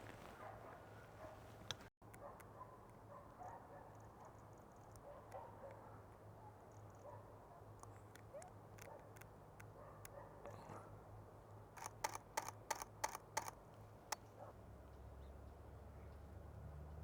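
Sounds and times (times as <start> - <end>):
light clicks: 11.8 - 14.3.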